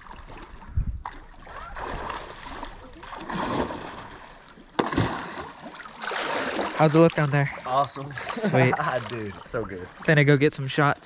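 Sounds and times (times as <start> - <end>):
water splashing and sloshing: 0.0 - 11.0
dull thump: 4.8 - 5.4.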